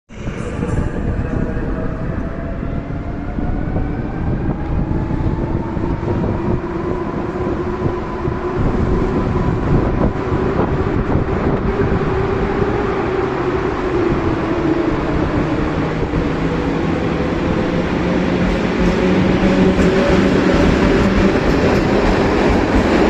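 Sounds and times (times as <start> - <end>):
rumble of train wheels: 0.1 - 23.0
rail clicks: 17.7 - 23.0.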